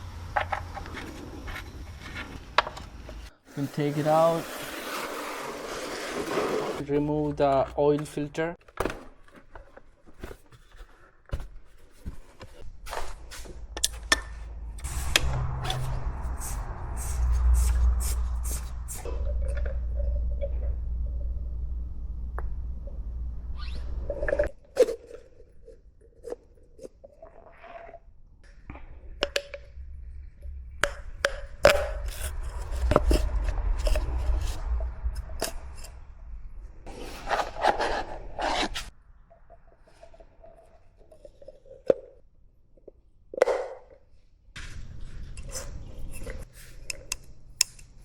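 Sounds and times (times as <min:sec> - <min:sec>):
low rumble: 0:13.5 - 0:24.5, 0:28.4 - 0:36.9
tools clicking and scraping: 0:45.3 - 0:48.0.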